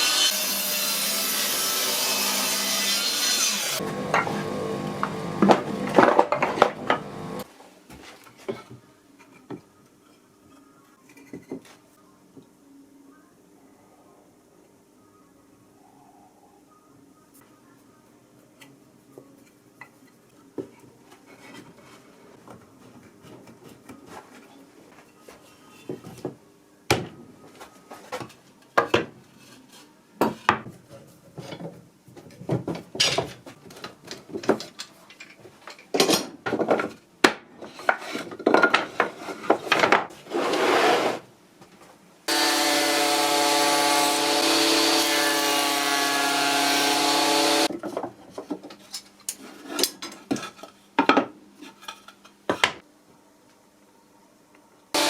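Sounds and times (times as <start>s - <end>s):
power tool motor running: 3.8s - 5.9s, 6.7s - 7.4s, 42.3s - 47.7s
wooden pieces knocking and scraping: 5.0s - 7.1s, 31.4s - 40.6s.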